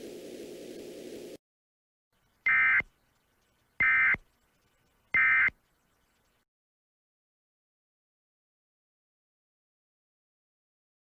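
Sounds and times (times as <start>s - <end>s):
warbling digital data tones: 2.2s - 6.4s.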